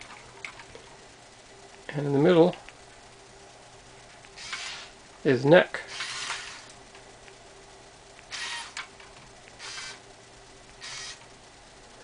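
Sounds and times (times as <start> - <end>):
toy robot gear motor whirring: 4.4 - 4.9, 5.9 - 6.8, 8.3 - 8.9, 9.6 - 10.0, 10.8 - 11.3.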